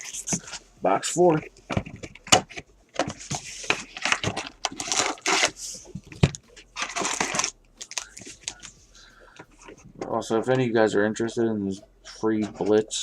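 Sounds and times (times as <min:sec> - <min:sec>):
plastic wrapping crinkling and tearing: 0:02.1 - 0:08.8.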